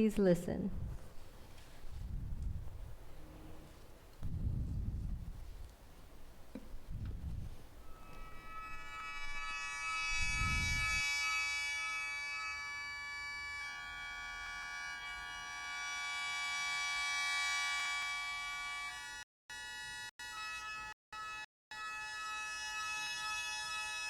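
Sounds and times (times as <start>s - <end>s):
mouth organ sustained chord: 7.8s - 15.5s.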